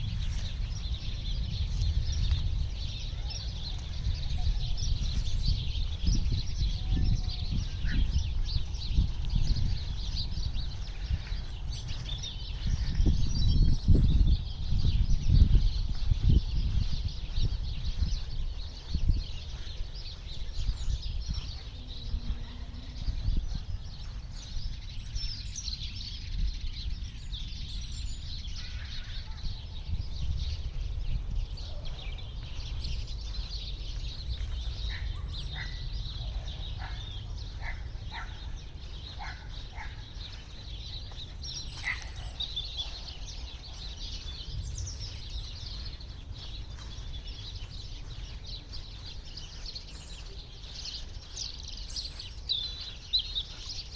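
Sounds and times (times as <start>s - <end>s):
small birds chirping: 0.0s - 53.9s
steady low rumble: 0.0s - 53.9s
repeated bird call notes: 31.2s - 53.9s.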